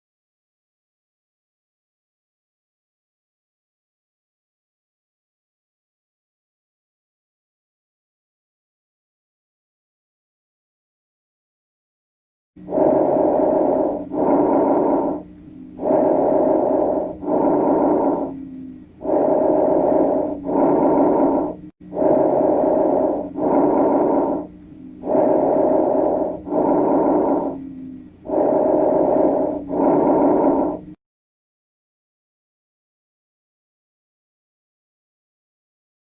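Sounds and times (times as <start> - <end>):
lung breathing sounds: 12.6 - 31.0.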